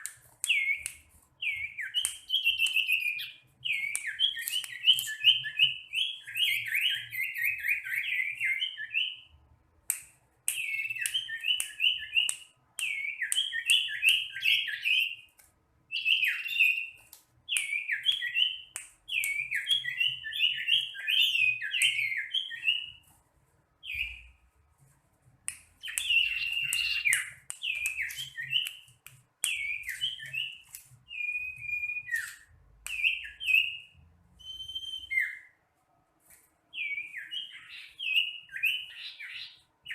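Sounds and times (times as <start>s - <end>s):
sharp bird clicks: 0.0s - 8.4s, 9.9s - 22.8s, 25.5s - 33.7s
bird whistled chirping song: 0.0s - 9.4s, 10.5s - 15.3s, 15.9s - 23.1s, 23.8s - 24.4s, 25.8s - 35.6s, 36.7s - 39.9s.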